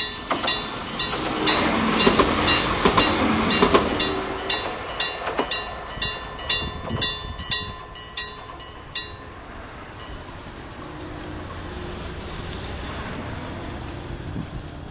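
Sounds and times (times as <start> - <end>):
level crossing warning bell: 0.0 - 10.9.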